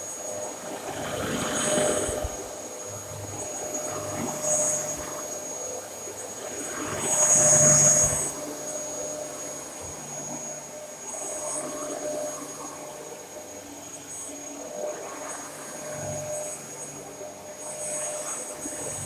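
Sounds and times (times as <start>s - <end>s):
vacuum cleaner running: 0.0s - 13.5s.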